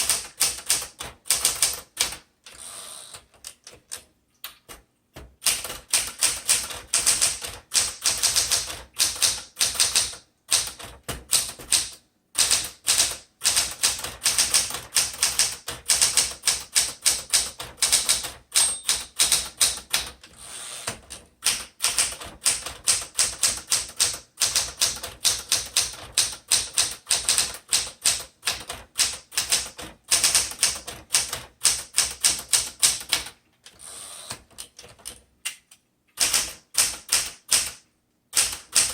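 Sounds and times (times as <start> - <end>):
typewriter keystroke clacks: 0.0 - 2.3, 5.4 - 33.4, 36.2 - 38.9.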